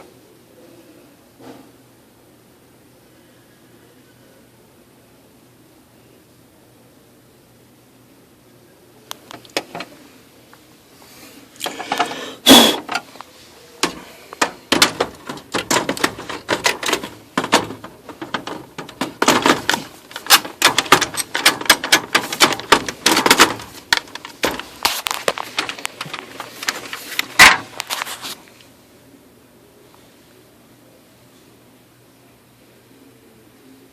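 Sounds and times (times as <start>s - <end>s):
printer mechanism clattering: 9.3s - 10.0s, 11.6s - 13.2s, 13.8s - 28.4s
sharp loud knocks: 13.8s - 24.7s.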